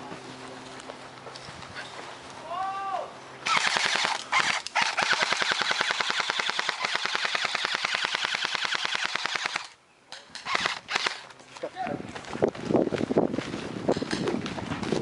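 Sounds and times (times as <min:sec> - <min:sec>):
airsoft gun rapid fire: 0:03.4 - 0:09.8, 0:10.4 - 0:11.2.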